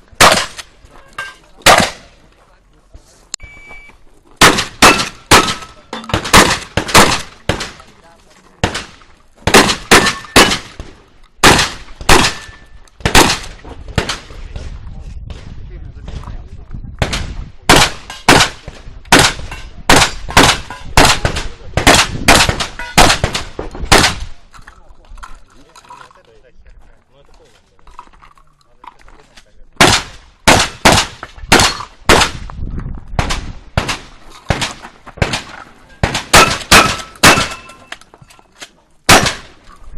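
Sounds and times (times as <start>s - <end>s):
shotgun shots: 0.2s - 0.7s, 1.6s - 2.2s, 4.4s - 7.9s, 8.6s - 14.7s, 17.0s - 24.4s, 29.8s - 32.4s, 33.2s - 37.9s, 39.1s - 39.6s.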